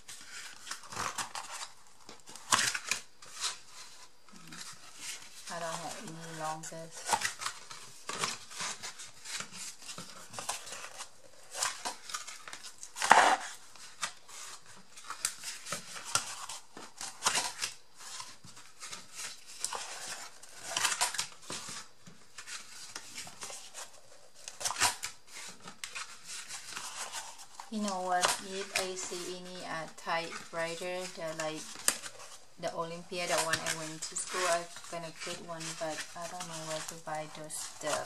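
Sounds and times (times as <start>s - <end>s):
paper handling rustles: 0.0s - 38.0s
scissors snipping paper: 24.5s - 38.0s.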